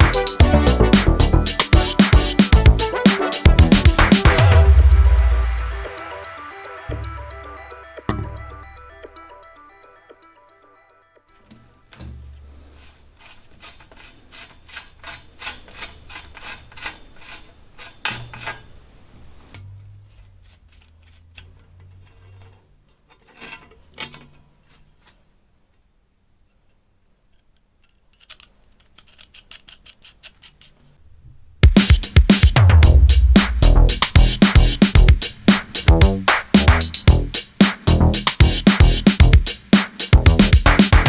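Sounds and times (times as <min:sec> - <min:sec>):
hand scraping metal part: 0:11.8 - 0:25.3, 0:26.4 - 0:31.0.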